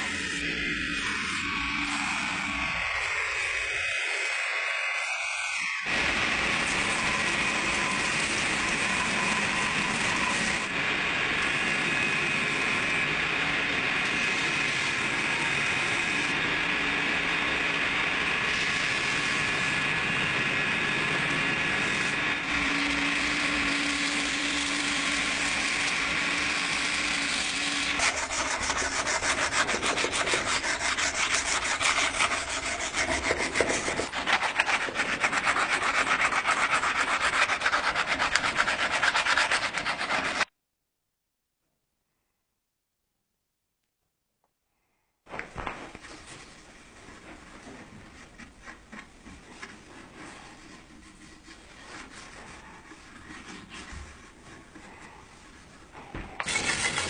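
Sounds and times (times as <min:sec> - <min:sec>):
sanding a knife: 0:05.8 - 0:10.7, 0:21.7 - 0:40.5, 0:47.7 - 0:57.0
coarse rapid rubbing: 0:21.9 - 0:40.5, 0:45.8 - 0:57.0.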